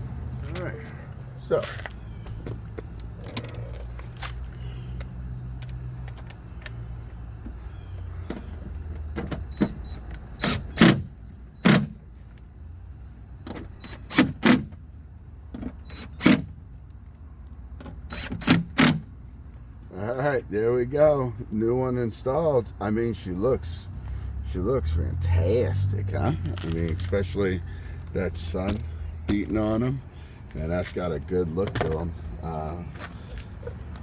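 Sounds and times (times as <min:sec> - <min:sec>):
screws seating clicks and knocks: 0:08.3 - 0:12.0, 0:13.5 - 0:14.8, 0:15.6 - 0:16.5, 0:17.8 - 0:19.1.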